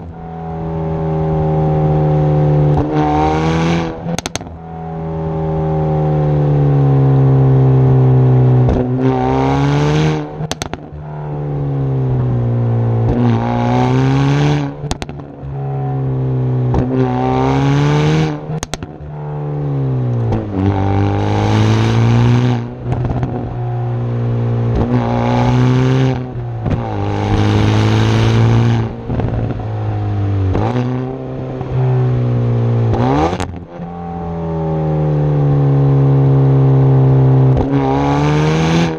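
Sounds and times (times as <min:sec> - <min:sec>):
car engine revving: 0:00.0 - 0:38.9
exhaust pops: 0:04.1 - 0:04.6, 0:10.4 - 0:11.1, 0:14.8 - 0:15.5, 0:18.5 - 0:19.2, 0:22.6 - 0:23.6, 0:26.1 - 0:27.5.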